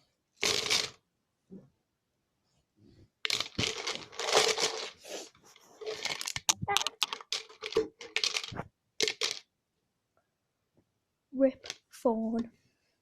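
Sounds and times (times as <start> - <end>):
crinkling and rustling: 0.4 - 1.0, 3.2 - 9.4.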